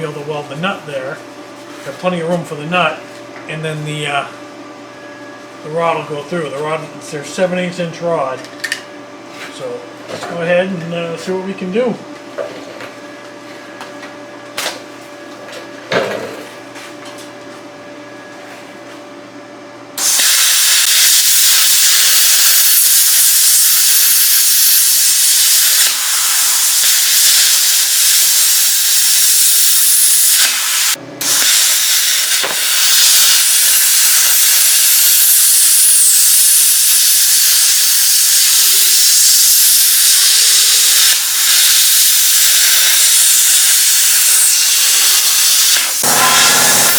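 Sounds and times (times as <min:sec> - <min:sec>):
plasma cutter hissing: 0:20.0 - 0:46.9.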